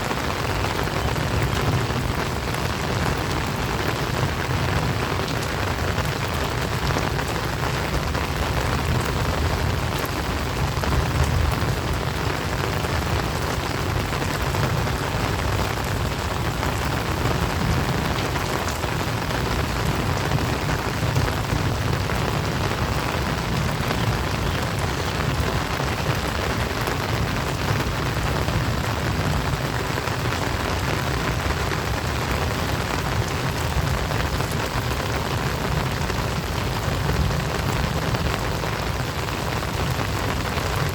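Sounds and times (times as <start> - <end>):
heavy rain falling: 0.0 - 40.9.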